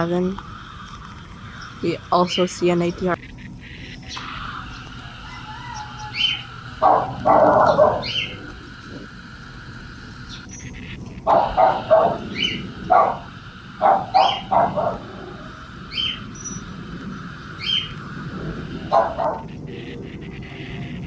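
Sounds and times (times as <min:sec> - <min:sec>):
low rumble: 0:00.0 - 0:21.0
dog barking: 0:05.3 - 0:08.6, 0:11.2 - 0:16.3, 0:18.8 - 0:19.6.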